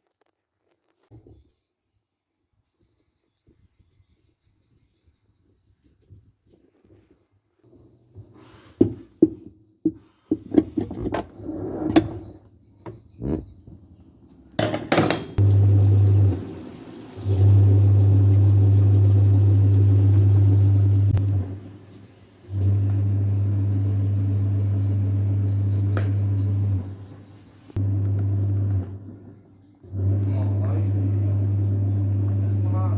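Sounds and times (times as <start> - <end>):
washing machine motor humming: 15.4 - 29.2, 29.9 - 32.9.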